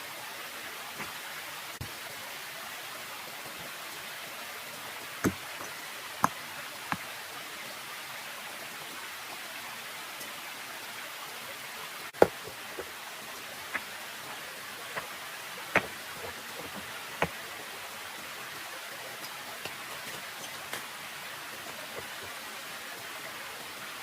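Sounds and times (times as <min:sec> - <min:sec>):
sharp knocks: 0:15.7 - 0:17.3.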